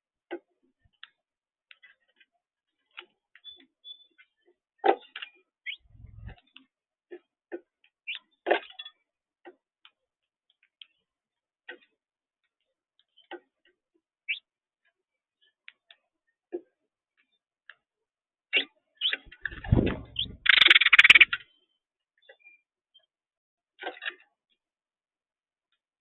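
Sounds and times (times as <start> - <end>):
birds pecking at a feeder: 19.0 - 21.4.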